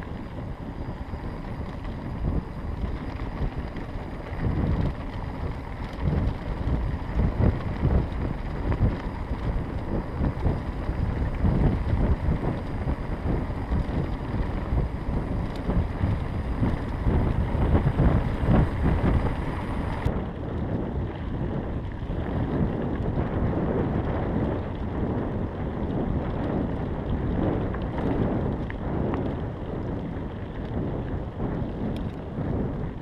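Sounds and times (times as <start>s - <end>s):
wind buffeting microphone: 0.0s - 33.0s.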